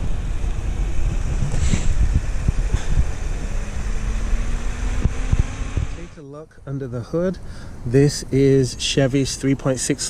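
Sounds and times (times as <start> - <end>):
wind buffeting microphone: 0.0 - 6.1.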